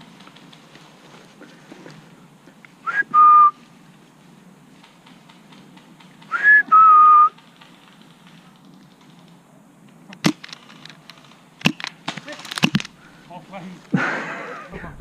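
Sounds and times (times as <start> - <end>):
loud whistled calls: 2.8 - 3.6, 6.3 - 7.4.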